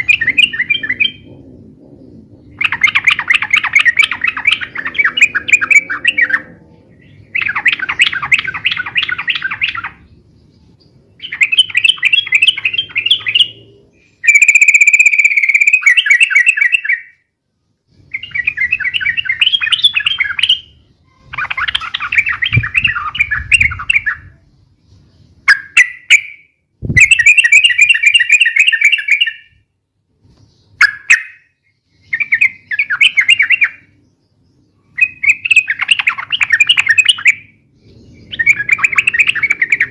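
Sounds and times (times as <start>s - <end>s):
bulbul bubbly chattering calls: 2.2s - 10.0s.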